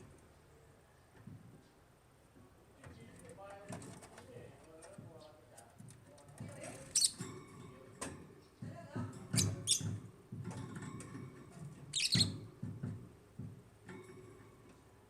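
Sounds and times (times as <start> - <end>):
low background noise: 0.0 - 15.0
lovebirds chirping: 6.8 - 7.2, 9.3 - 10.0, 11.9 - 12.5.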